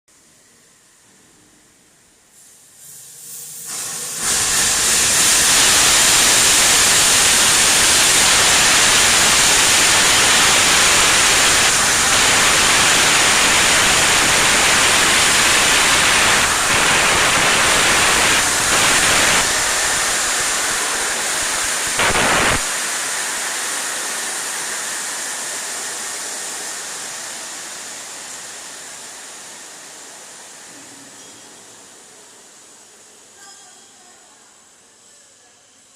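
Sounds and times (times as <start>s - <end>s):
compressed air hissing: 2.3s - 25.2s.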